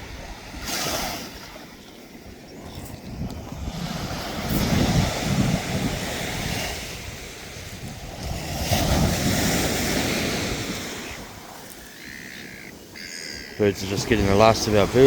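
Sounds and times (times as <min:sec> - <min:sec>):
wind buffeting microphone: 0:00.0 - 0:15.0
surf breaking on beach: 0:03.4 - 0:11.9, 0:12.7 - 0:15.0.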